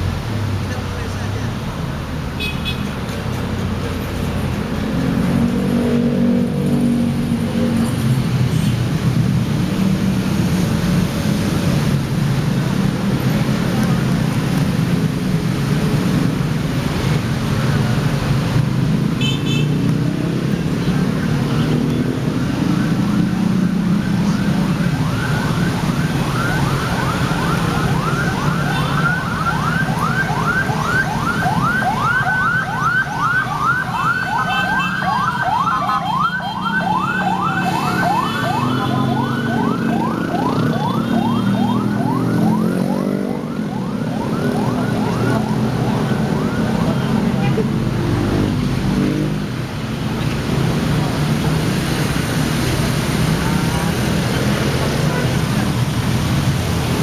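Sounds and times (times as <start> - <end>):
traffic rumble: 0.0 - 57.0
siren yelping: 21.2 - 48.5
second siren tone gliding down: 22.4 - 47.2.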